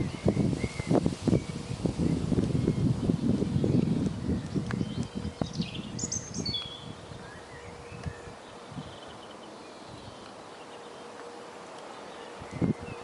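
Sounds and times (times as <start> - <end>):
bird chirps: 3.5 - 11.3.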